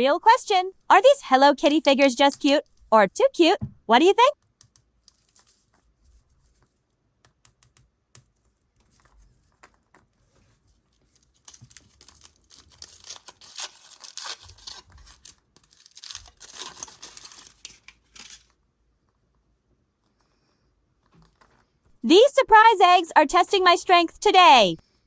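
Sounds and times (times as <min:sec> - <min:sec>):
packaging tearing and crinkling: 0:10.8 - 0:18.6.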